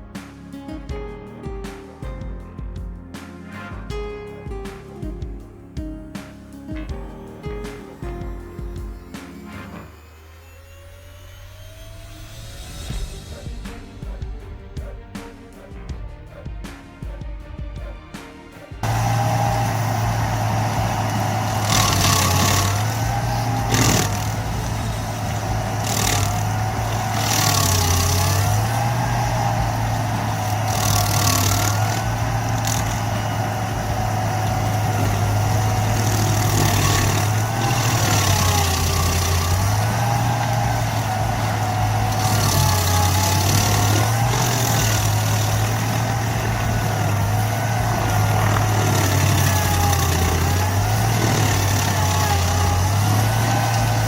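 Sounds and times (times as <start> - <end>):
heavy machine engine droning: 18.8 - 54.0
wavering whine: 18.8 - 54.0.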